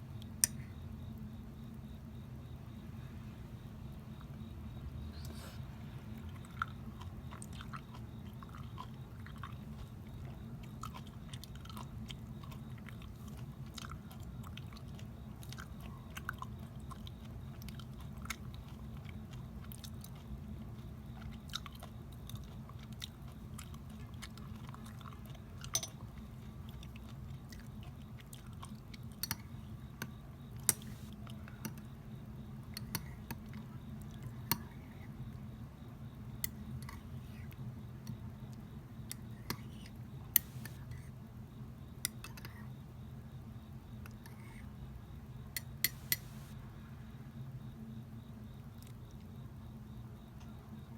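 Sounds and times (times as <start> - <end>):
steady low background hum: 0.0 - 50.9
close chewing and biting: 6.1 - 29.6, 40.4 - 40.8.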